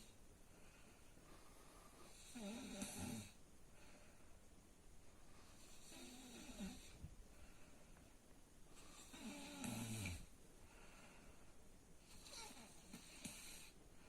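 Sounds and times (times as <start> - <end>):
person snoring: 2.1 - 3.4, 5.8 - 7.0, 9.0 - 10.3.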